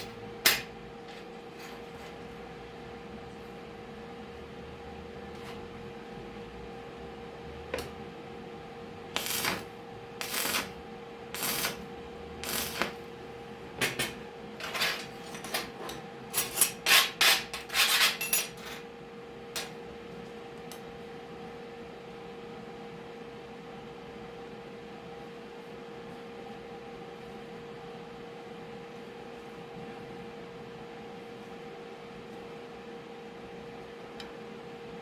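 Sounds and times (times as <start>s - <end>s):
steady hum: 0.0s - 15.1s
scraping strokes on metal: 11.4s - 11.8s.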